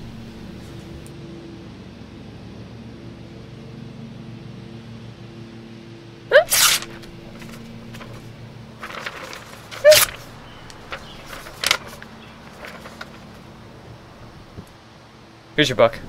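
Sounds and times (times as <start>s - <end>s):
person hiccuping: 6.3s - 6.6s.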